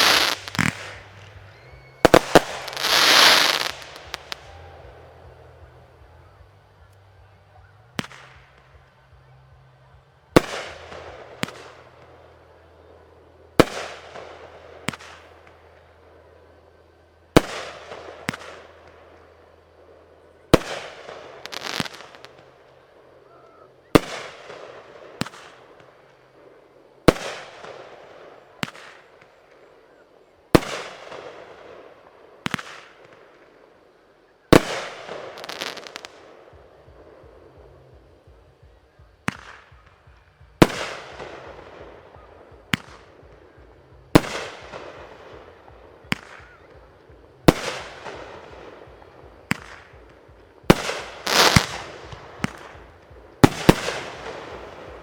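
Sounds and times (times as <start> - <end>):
fireworks bursting with loud bangs: 0.0 - 7.1, 7.8 - 9.1, 10.3 - 12.5, 13.4 - 16.0, 17.3 - 55.0.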